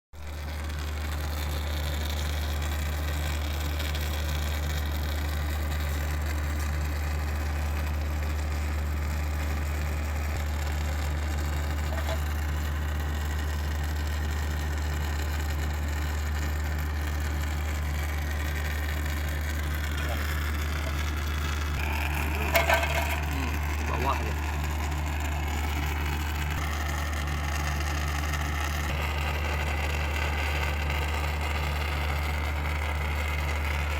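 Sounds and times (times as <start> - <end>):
low machine hum: 0.2 - 33.9
knocks and clatter: 11.8 - 12.3, 21.8 - 23.5.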